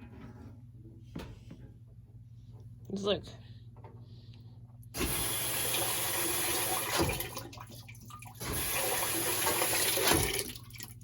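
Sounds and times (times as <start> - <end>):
water rushing into washing machine: 5.0 - 11.0.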